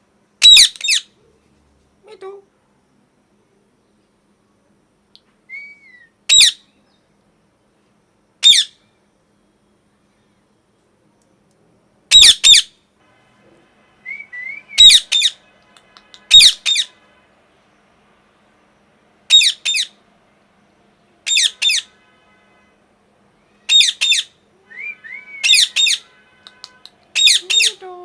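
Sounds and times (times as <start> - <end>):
parakeet screeching: 0.4 - 1.1, 5.8 - 6.6, 8.4 - 8.8, 12.1 - 12.7, 14.3 - 15.4, 16.2 - 17.0, 19.3 - 20.0, 21.2 - 22.0, 23.6 - 27.8.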